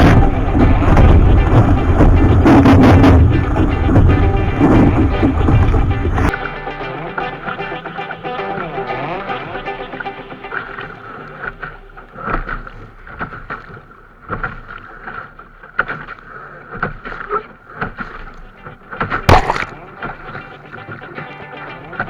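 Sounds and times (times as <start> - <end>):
water slapping against hull: 0.0 - 6.4, 10.5 - 21.1
steady water wash: 0.0 - 21.2
sharp knock: 19.3 - 19.8.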